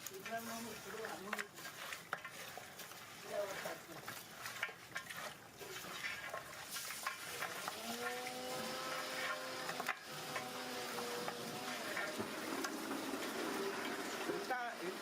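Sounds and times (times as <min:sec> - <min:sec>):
ladle scraping and clicking on pot: 0:01.0 - 0:02.6, 0:09.0 - 0:14.3
food frying in a pot: 0:06.8 - 0:15.0.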